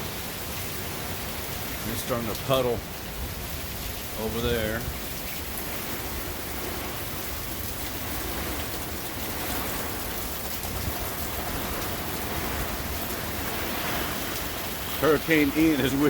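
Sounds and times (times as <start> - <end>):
heavy rain rushing: 0.0 - 16.0
wind: 0.0 - 16.0.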